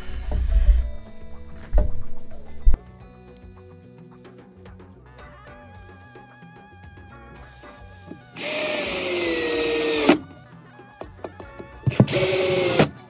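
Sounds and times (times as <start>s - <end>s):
light background music: 0.0s - 13.0s
power drill running: 8.4s - 10.2s, 11.9s - 13.0s.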